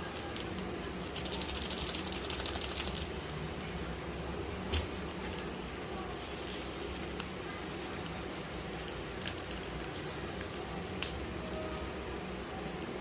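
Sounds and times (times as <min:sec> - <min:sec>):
plastic packaging crinkling: 0:05.1 - 0:11.8.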